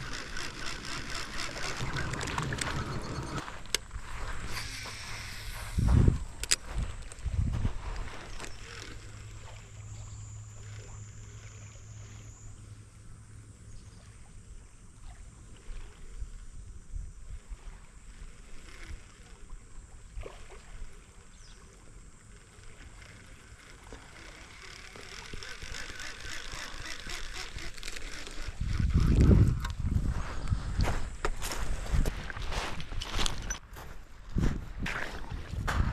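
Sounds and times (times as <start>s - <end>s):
crackling rustle: 0.0s - 10.0s, 22.3s - 35.9s
lake water lapping: 0.0s - 12.4s, 17.3s - 35.9s
light wind: 0.0s - 35.9s.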